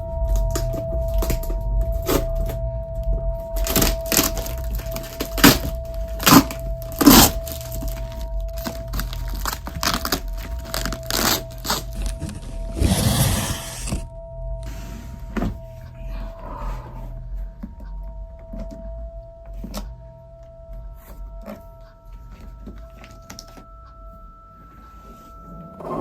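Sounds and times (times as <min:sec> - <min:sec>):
low hum: 0:00.0 - 0:26.0
held tone: 0:12.3 - 0:14.1.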